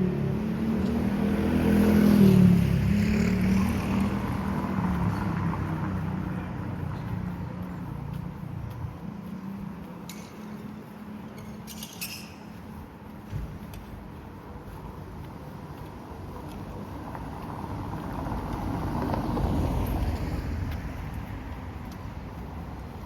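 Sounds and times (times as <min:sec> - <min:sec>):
motor vehicle engine passing: 0:00.0 - 0:07.4
outdoor background noise: 0:00.0 - 0:23.0
light clinks: 0:11.3 - 0:12.5.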